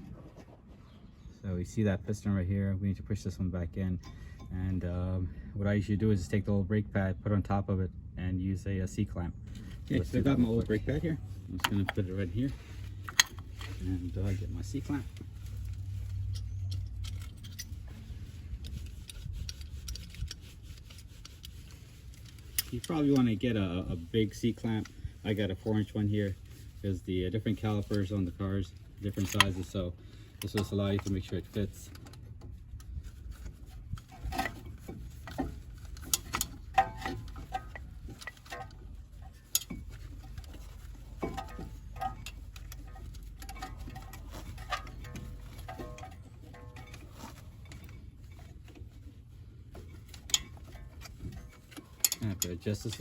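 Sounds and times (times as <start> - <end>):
steady low hum: 0.0 - 53.0
steady low rumble: 0.0 - 53.0
tools clicking and clinking: 13.0 - 13.8, 16.1 - 17.9, 29.1 - 29.8, 33.9 - 48.7, 49.8 - 53.0
metallic clicks and clinks: 15.7 - 17.9, 50.1 - 53.0.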